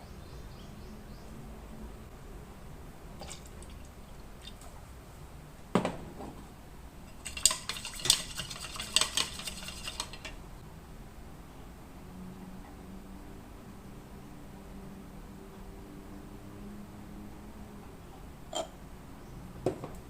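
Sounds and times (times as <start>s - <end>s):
knock: 5.8s - 6.4s
spoon clinking in a cup: 7.1s - 10.3s, 18.5s - 18.8s.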